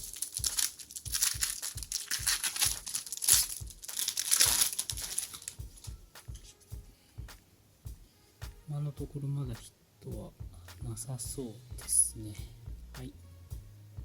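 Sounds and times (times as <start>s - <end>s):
foil wrapper crinkling: 0.0s - 6.6s.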